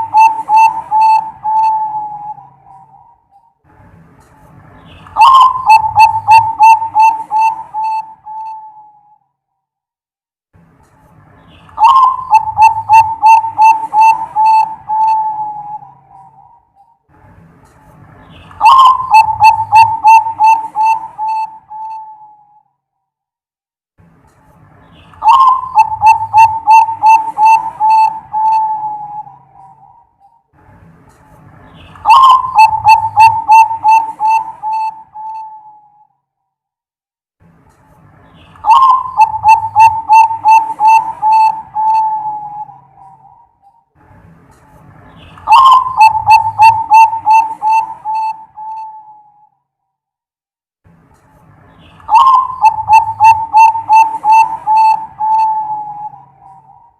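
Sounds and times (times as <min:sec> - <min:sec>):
dove cooing: 0:00.0 - 0:03.2, 0:05.2 - 0:09.1, 0:11.8 - 0:16.6, 0:18.6 - 0:22.5, 0:25.2 - 0:30.1, 0:32.0 - 0:36.0, 0:38.6 - 0:43.5, 0:45.4 - 0:49.4, 0:52.1 - 0:56.9.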